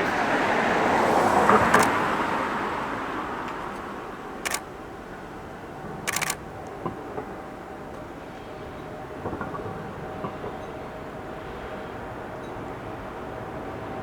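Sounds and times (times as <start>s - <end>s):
passing vehicle: 0.0s - 5.0s
camera shutter clicking: 1.8s - 2.0s, 4.4s - 4.7s, 6.1s - 6.4s.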